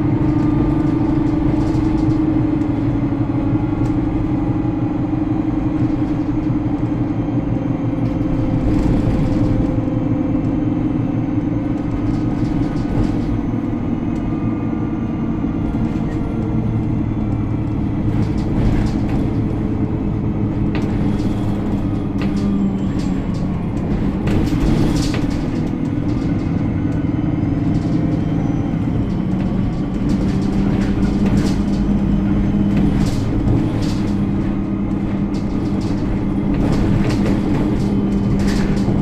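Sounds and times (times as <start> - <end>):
bus engine and road rumble: 0.0 - 39.0
small rattles: 0.2 - 3.0, 11.2 - 14.4, 15.6 - 39.0.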